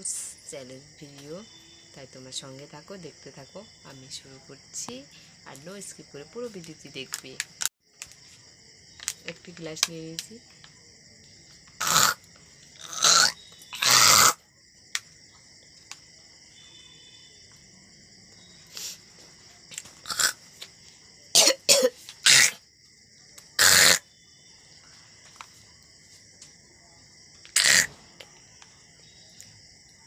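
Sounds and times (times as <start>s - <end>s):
insect trill: 0.0s - 30.0s
person coughing: 21.3s - 22.0s.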